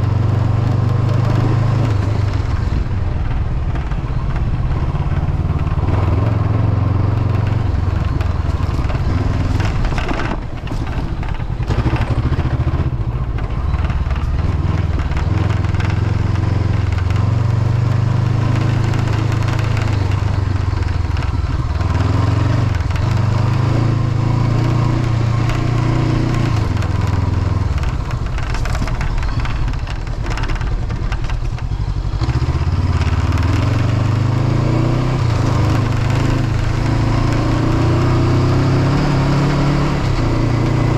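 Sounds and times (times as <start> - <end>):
motorcycle engine running: 0.0 - 40.9
windshield rattling: 7.2 - 24.2, 25.1 - 34.2.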